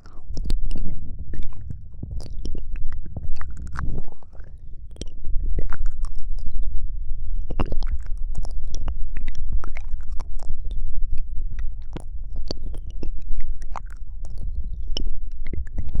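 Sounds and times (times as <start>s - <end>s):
low rumble: 0.0s - 16.0s
wet mouth clicks and smacks: 2.2s - 6.7s, 7.5s - 10.6s, 13.6s - 15.8s.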